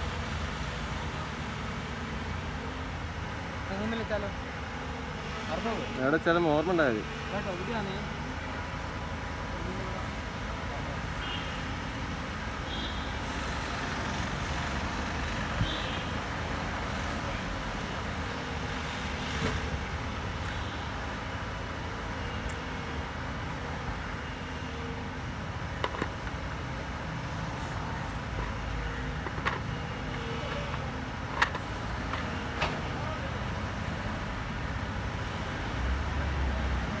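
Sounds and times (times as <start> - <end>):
sharp clicks and knocks: 25.7 - 26.5, 27.6 - 32.9.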